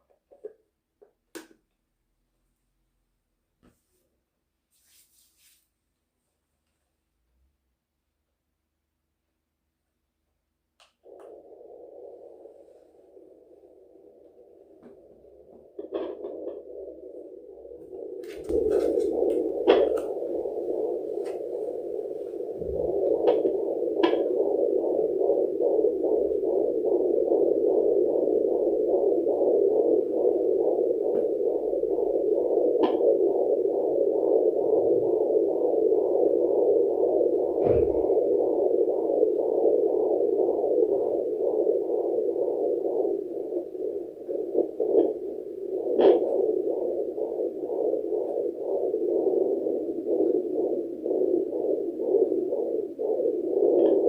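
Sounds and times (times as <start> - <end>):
doppler pulsing heartbeat: 10.8 - 54.0.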